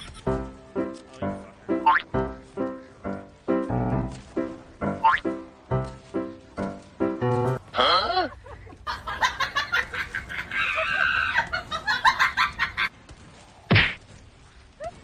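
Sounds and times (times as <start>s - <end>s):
chicken squawking: 10.1s - 12.9s.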